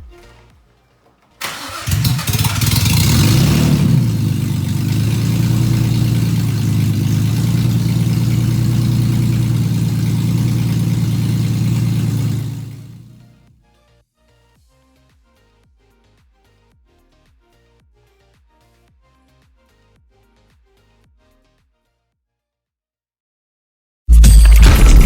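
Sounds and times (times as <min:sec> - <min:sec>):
car engine starting and idling: 0:00.0 - 0:13.5.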